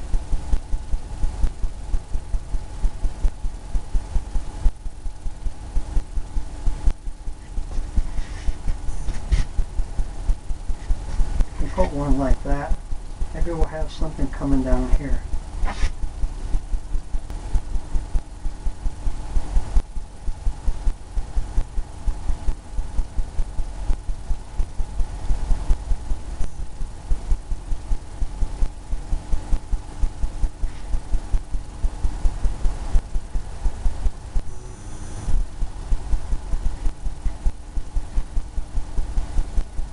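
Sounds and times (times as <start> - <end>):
faint steady hum: 0.0 - 39.9
paintbrush thumping on canvas: 7.7 - 9.6, 15.6 - 16.0.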